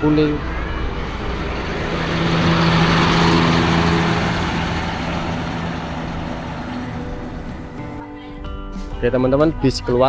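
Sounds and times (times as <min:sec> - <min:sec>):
coach driving past: 0:00.0 - 0:08.0
low engine hum: 0:00.0 - 0:08.1.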